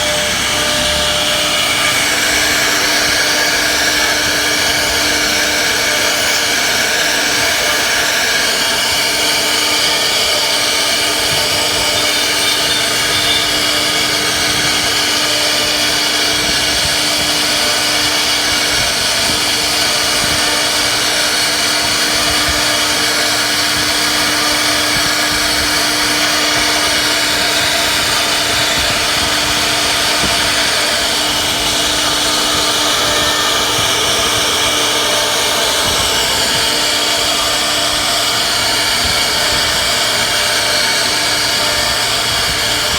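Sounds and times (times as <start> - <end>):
router spindle cutting wood: 0.0 - 42.9.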